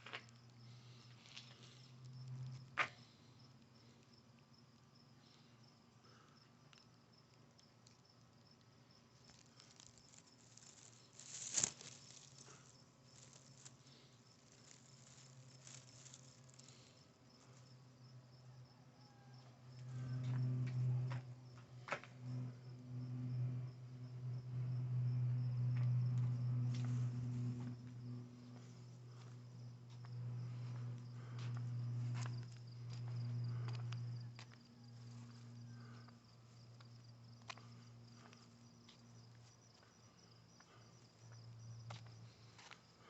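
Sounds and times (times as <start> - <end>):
crickets trilling: 0.0 - 43.0
low hum: 19.5 - 39.3.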